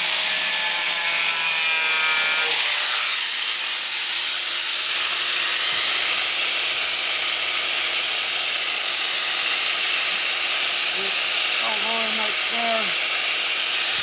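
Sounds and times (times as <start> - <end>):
angle grinder cutting steel: 0.0 - 14.0.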